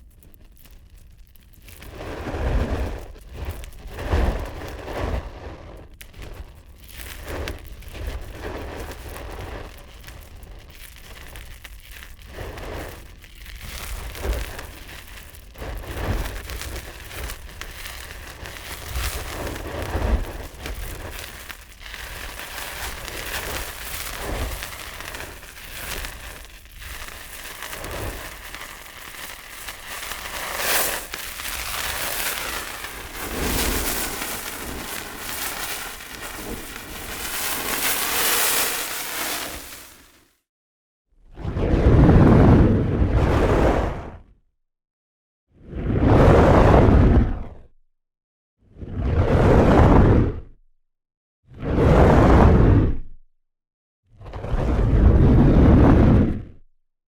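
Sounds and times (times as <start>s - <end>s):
fire crackling and popping: 0.0s - 40.3s.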